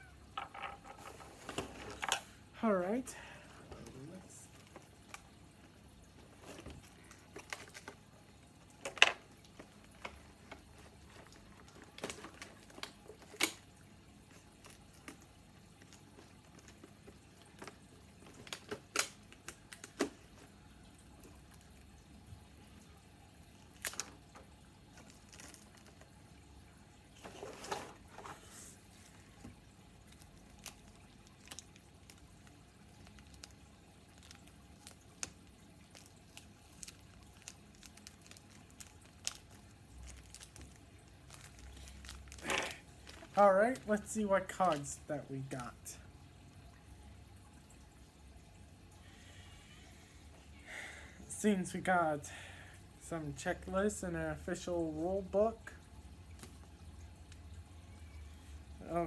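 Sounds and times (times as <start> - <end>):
packaging rustling: 6.2 - 13.7, 24.9 - 26.1, 30.0 - 44.0.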